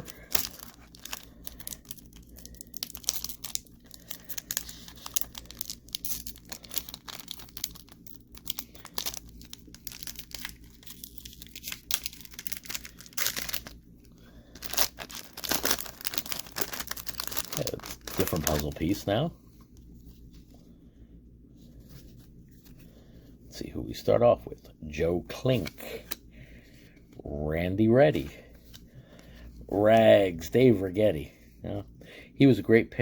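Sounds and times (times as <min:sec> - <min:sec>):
paper wrapper tearing and crinkling: 0:00.0 - 0:13.8, 0:14.6 - 0:19.0
faint low hum: 0:00.0 - 0:33.0.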